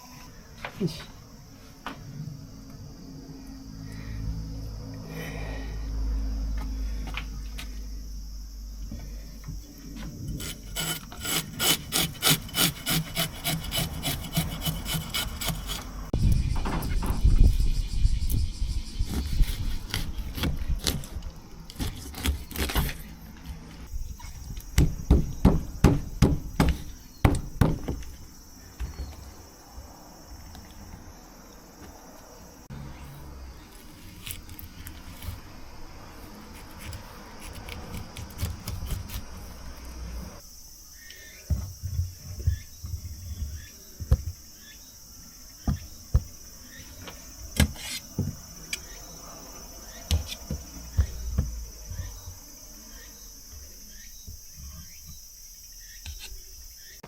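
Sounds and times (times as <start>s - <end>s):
insects chirring: 0.0s - 57.0s.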